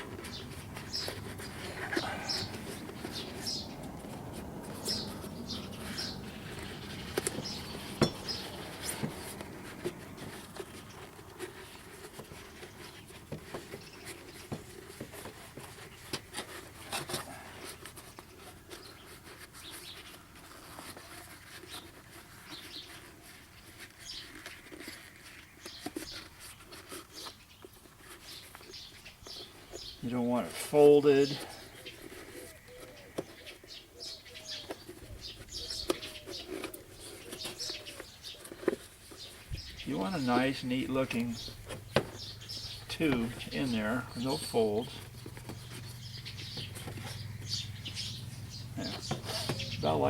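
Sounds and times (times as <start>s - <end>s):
birds chirping faintly: 0.0s - 50.0s
rubber rustling and rubbing: 0.0s - 50.0s.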